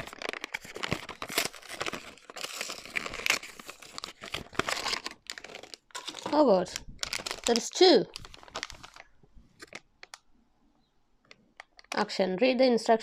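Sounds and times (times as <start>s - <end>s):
packaging tearing and crinkling: 0.0s - 10.2s.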